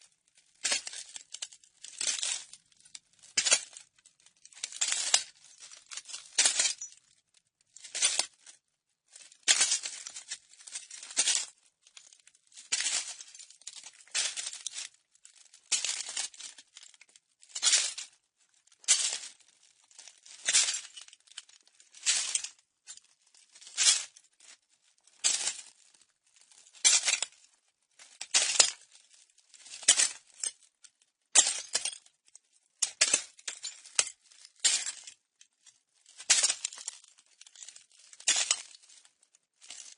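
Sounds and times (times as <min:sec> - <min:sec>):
footsteps crunching on broken glass: 0:00.6 - 0:01.1, 0:01.9 - 0:02.4, 0:04.6 - 0:07.0, 0:09.2 - 0:16.6, 0:17.6 - 0:18.1, 0:18.8 - 0:24.6, 0:25.2 - 0:27.3, 0:28.3 - 0:28.9, 0:29.6 - 0:30.5, 0:31.4 - 0:32.1, 0:32.8 - 0:35.2, 0:36.0 - 0:39.9
glass shards clinking: 0:38.2 - 0:38.7.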